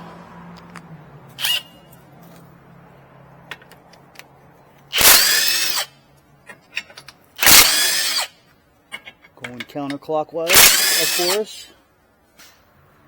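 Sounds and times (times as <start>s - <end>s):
power wrench spinning: 1.4s - 1.9s, 4.9s - 6.0s, 6.8s - 8.4s, 10.5s - 11.6s.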